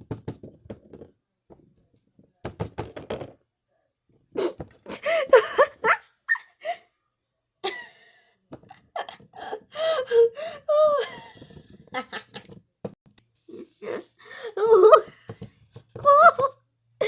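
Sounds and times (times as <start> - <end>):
girl coughing and laughing: 4.4 - 6.8, 7.6 - 8.0.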